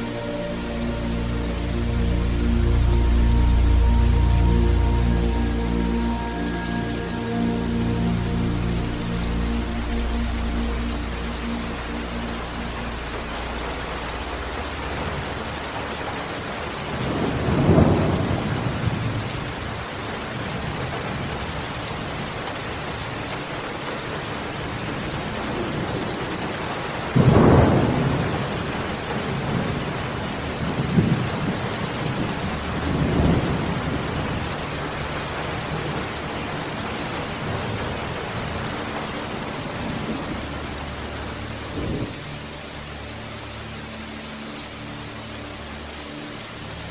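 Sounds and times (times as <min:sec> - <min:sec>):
steady rain falling: 0:00.0 - 0:46.9
rolling thunder: 0:17.0 - 0:19.8, 0:27.1 - 0:34.4.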